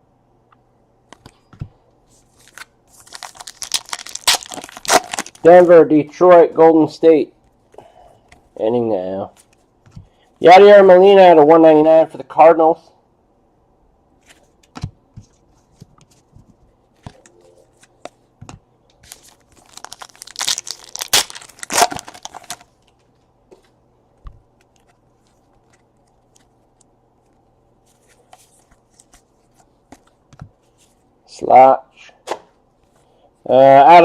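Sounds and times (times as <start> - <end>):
wrapper tearing and crinkling: 2.4 - 5.5, 19.0 - 22.7.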